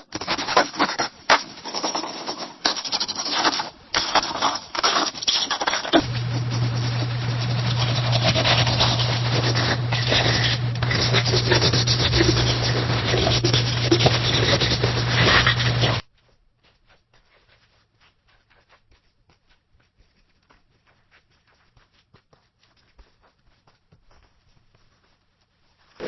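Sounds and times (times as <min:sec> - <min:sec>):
pencil scratching on paper: 0:00.0 - 0:16.0
steady low hum: 0:05.8 - 0:17.0.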